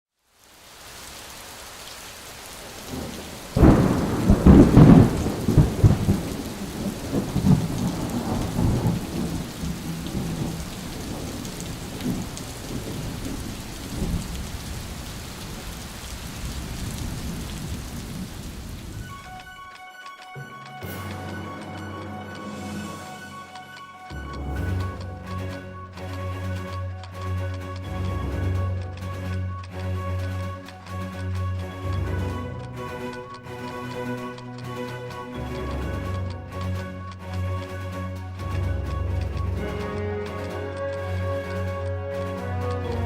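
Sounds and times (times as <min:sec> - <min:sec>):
steady rain: 0:00.1 - 0:43.0
thunder clap and rumble: 0:02.7 - 0:19.4.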